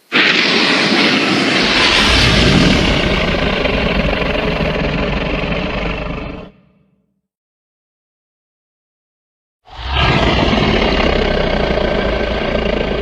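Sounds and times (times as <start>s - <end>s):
monster roar with deep rumble: 1.5s - 6.8s, 9.7s - 13.0s.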